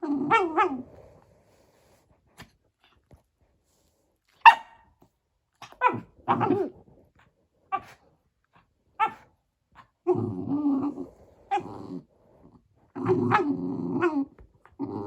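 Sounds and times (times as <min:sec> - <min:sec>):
dog barking and yelping: 0:00.2 - 0:00.8, 0:04.4 - 0:04.8, 0:05.6 - 0:06.7, 0:07.7 - 0:08.0, 0:09.0 - 0:09.3
dog growling: 0:09.8 - 0:15.0.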